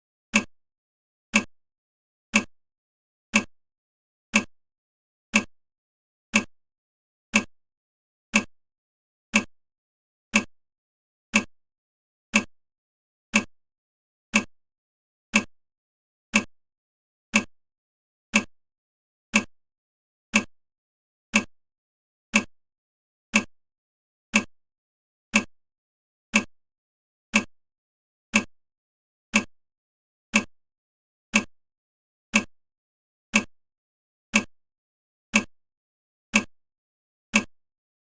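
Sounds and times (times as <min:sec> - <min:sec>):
timer ticking: 0:00.3 - 0:00.5, 0:01.3 - 0:01.5, 0:02.3 - 0:02.5, 0:03.3 - 0:03.6, 0:04.3 - 0:04.6, 0:05.3 - 0:05.6, 0:06.3 - 0:06.5, 0:07.3 - 0:07.6, 0:08.3 - 0:08.5, 0:09.3 - 0:09.5, 0:10.3 - 0:10.5, 0:11.3 - 0:11.5, 0:12.3 - 0:12.5, 0:13.3 - 0:13.5, 0:14.3 - 0:14.5, 0:15.3 - 0:15.5, 0:16.3 - 0:16.5, 0:17.3 - 0:17.5, 0:18.3 - 0:18.5, 0:19.3 - 0:19.5, 0:20.3 - 0:20.5, 0:21.3 - 0:21.5, 0:22.3 - 0:22.5, 0:23.3 - 0:23.5, 0:24.3 - 0:24.5, 0:25.3 - 0:25.5, 0:26.3 - 0:26.5, 0:27.3 - 0:27.5, 0:28.3 - 0:28.5, 0:29.3 - 0:29.5, 0:30.3 - 0:30.6, 0:31.3 - 0:31.6, 0:32.3 - 0:32.6, 0:33.3 - 0:33.6, 0:34.3 - 0:34.6, 0:35.3 - 0:35.6, 0:36.3 - 0:36.6, 0:37.3 - 0:37.6.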